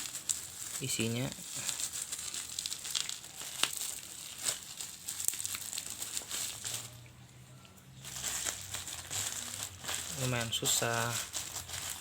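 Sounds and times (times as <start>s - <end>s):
plastic packaging crinkling: 0.0s - 7.1s, 7.8s - 12.0s.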